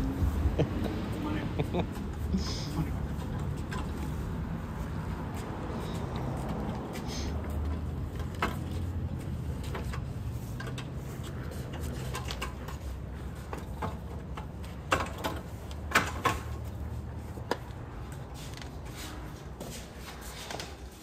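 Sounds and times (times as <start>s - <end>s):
knocks and clicks of handling: 7.5s - 16.8s.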